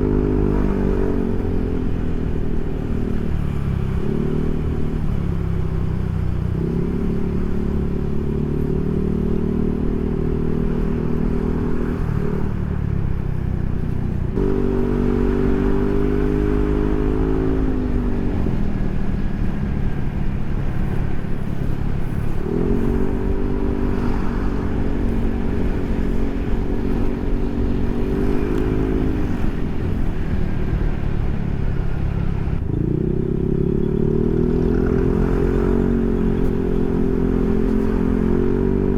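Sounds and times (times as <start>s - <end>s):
scooter engine running: 0.0s - 38.9s.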